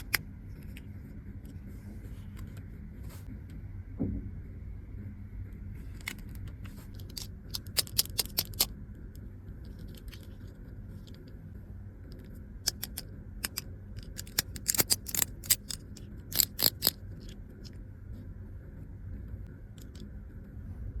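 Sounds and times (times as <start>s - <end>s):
plastic toy pieces clicking: 0.0s - 0.2s, 7.0s - 8.7s, 12.7s - 17.0s, 19.8s - 20.0s
steady low hum: 0.0s - 21.0s.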